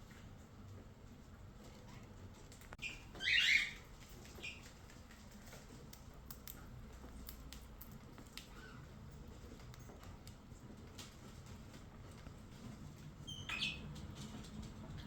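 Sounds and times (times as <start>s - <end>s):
faint ticks and scratches: 0.0s - 15.0s
cockatiel chirping: 2.8s - 4.6s, 13.3s - 13.8s.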